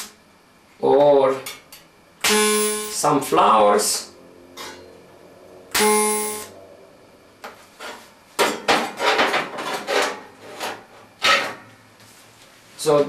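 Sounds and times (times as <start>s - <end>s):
ringing metallic clang: 4.5s - 5.1s.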